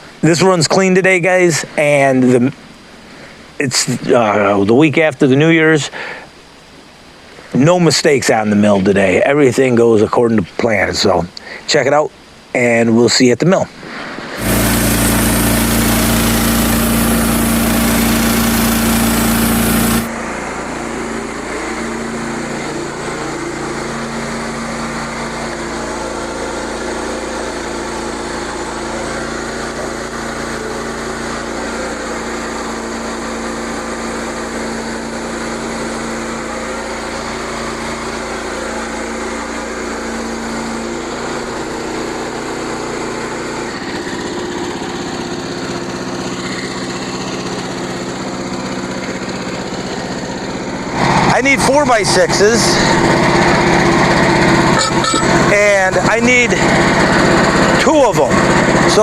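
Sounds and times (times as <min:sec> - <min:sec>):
small engine running: 0:14.0 - 0:59.0.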